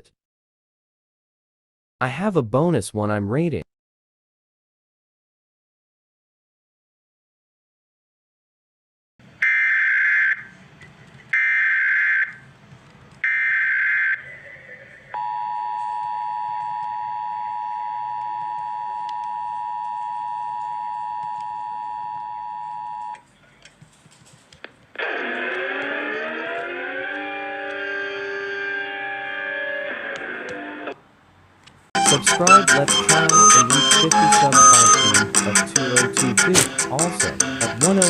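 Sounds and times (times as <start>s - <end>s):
rising siren wail: 9.4s - 10.6s, 11.4s - 12.4s, 13.2s - 23.2s, 25.0s - 31.0s
two-tone attention signal: 32.0s - 35.3s.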